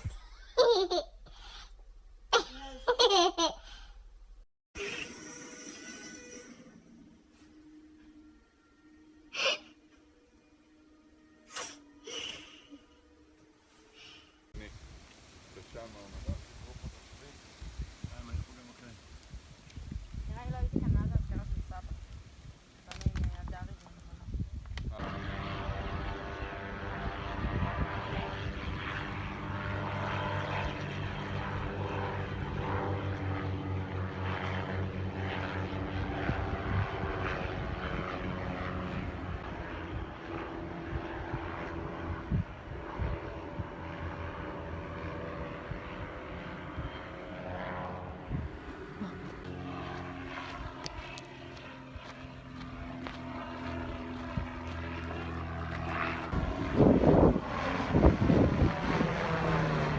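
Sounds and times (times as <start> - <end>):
low drone of held tones: 4.8 - 14.0, 25.0 - 59.9.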